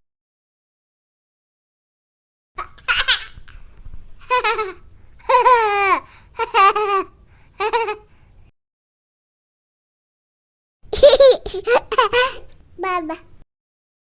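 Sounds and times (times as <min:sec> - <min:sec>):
baby laughing: 0:02.6 - 0:03.6, 0:04.2 - 0:08.1, 0:10.9 - 0:12.5.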